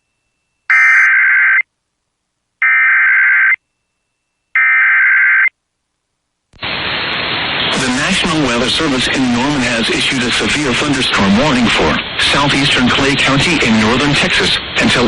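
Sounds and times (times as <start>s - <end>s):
broadcast audio hiss: 0.0s - 15.0s
warbling digital data tones: 0.7s - 1.6s.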